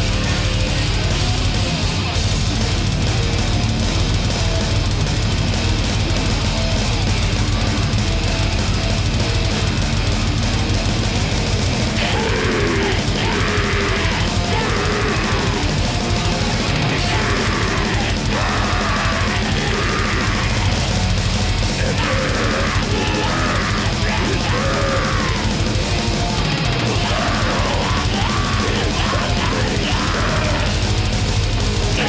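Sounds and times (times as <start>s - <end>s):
black metal band playing live: 0.0s - 32.0s.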